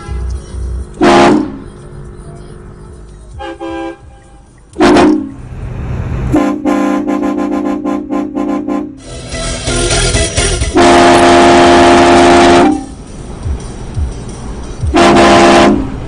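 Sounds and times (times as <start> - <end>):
train horn blasts: 1.0 - 1.6, 3.4 - 5.4, 6.4 - 9.3, 10.6 - 13.0, 15.0 - 16.0.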